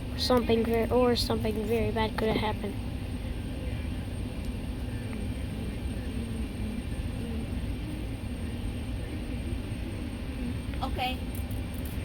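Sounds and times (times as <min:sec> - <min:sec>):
low engine rumble: 0:00.0 - 0:12.0.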